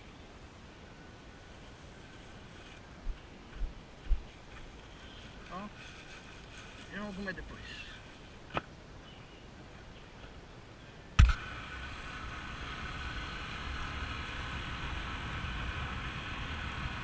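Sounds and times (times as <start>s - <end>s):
vehicle running with faint whine: 11.2s - 17.0s.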